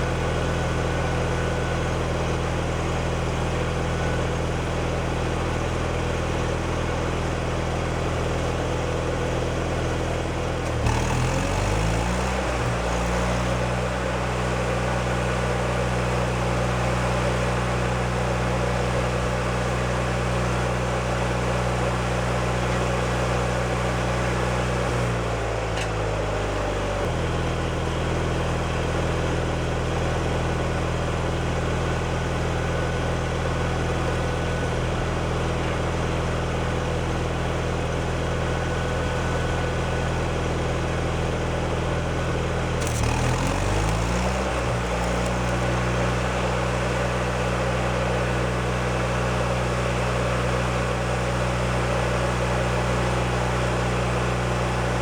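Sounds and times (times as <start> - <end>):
engine-driven welder running: 0.0 - 28.5, 39.2 - 55.0.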